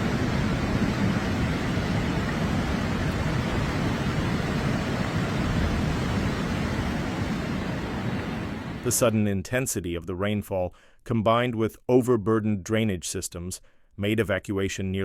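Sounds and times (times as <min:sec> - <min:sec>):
rushing floodwater: 0:00.0 - 0:09.1.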